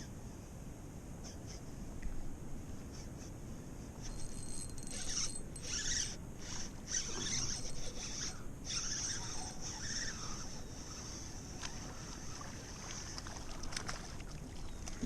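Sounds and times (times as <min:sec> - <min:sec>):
fishing reel whirring: 0:04.0 - 0:13.6.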